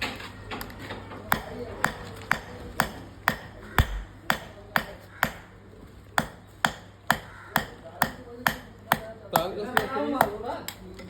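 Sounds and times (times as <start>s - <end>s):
hammer striking metal: 1.3s - 5.5s, 6.2s - 10.4s.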